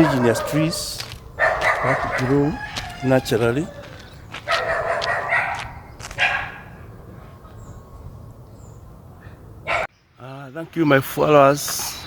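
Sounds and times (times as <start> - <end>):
dog barking: 0.0 - 2.8, 4.4 - 6.7, 9.6 - 9.9.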